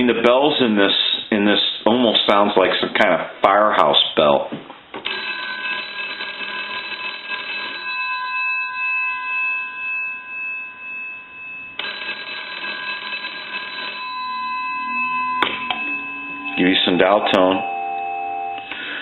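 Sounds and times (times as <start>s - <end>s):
telephone bell ringing: 5.0s - 19.0s.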